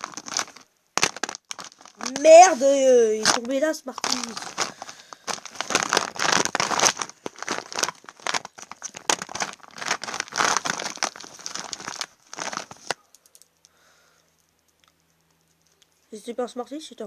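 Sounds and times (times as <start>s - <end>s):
chocolate wrappers crinkling: 0.0s - 13.5s.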